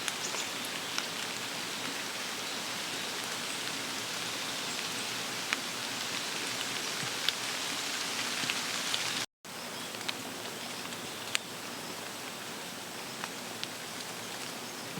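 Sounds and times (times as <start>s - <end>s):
rain hiss: 0.0s - 14.9s
rain drop ticks: 4.7s - 7.5s.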